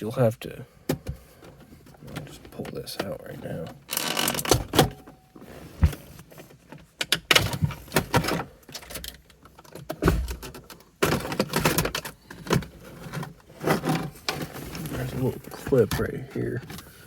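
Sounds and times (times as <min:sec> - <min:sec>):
plastic trim clicking and rattling: 0:03.8 - 0:05.1.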